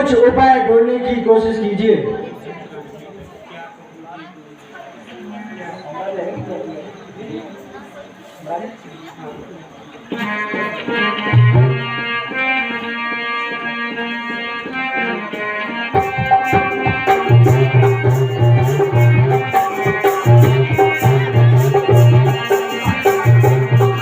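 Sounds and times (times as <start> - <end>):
sustained keyboard melody: 10.2 - 24.0
steady drum rhythm: 16.0 - 24.0.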